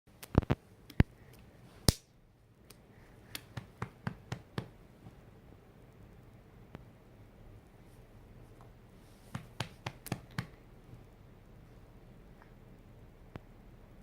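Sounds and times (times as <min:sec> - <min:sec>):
hand patting a back: 0:03.3 - 0:05.2, 0:09.3 - 0:10.6.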